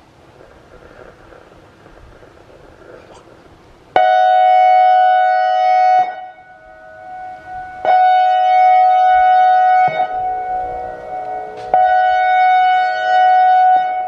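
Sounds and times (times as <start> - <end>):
electronic siren two-note tone: 4.0 - 14.0.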